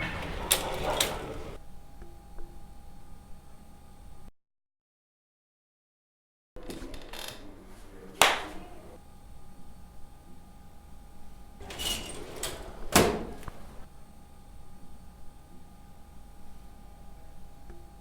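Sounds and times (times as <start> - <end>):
loud bangs: 0.0 - 1.6.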